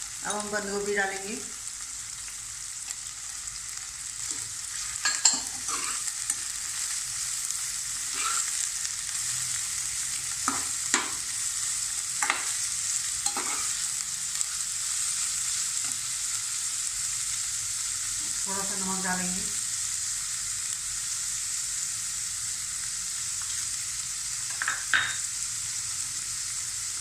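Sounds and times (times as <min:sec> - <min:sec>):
vegetables sizzling in oil: 0:00.0 - 0:27.0
spatula scraping a pan: 0:04.2 - 0:06.6, 0:07.9 - 0:08.7, 0:13.2 - 0:13.8.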